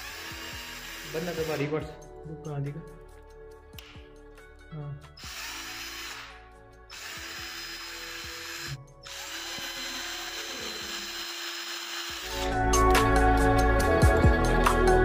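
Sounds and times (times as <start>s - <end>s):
cordless drill whirring: 0.0s - 1.7s, 5.2s - 12.6s.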